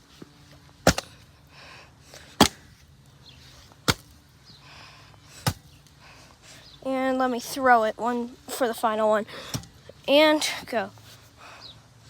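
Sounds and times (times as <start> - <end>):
tool striking water balloon: 0.8 - 1.2, 2.4 - 2.8, 3.9 - 4.1, 5.4 - 5.7.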